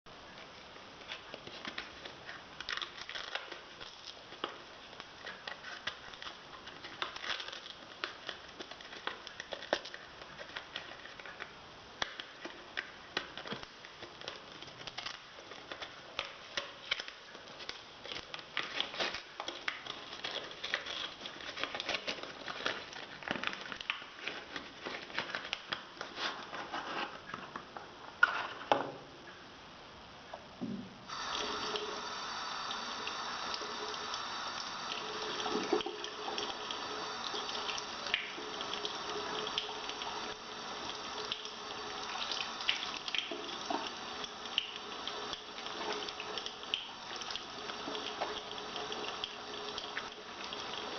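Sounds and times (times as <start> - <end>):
hands lathering soap: 31.1 - 50.9.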